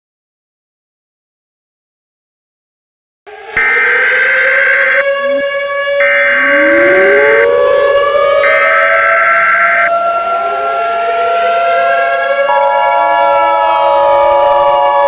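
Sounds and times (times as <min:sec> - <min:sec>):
civil defense siren winding up: 0:03.3 - 0:15.0
steady lower siren tone: 0:03.3 - 0:15.0
higher alarm tone blasts: 0:03.6 - 0:15.0.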